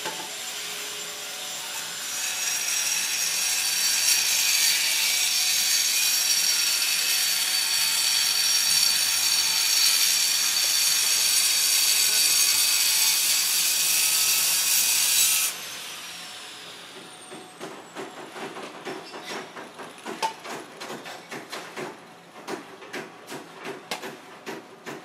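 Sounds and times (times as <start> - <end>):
sharp knocks and taps: 17.0 - 25.0.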